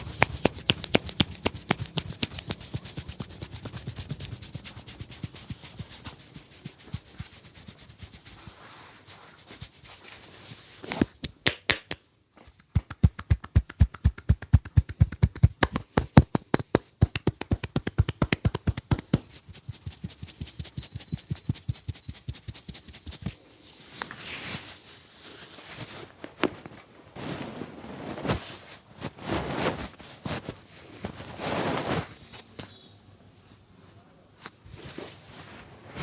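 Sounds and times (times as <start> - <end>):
hands slapping and tapping: 0.0 - 7.4, 10.9 - 23.4
rubbing: 0.0 - 11.0, 13.3 - 26.2.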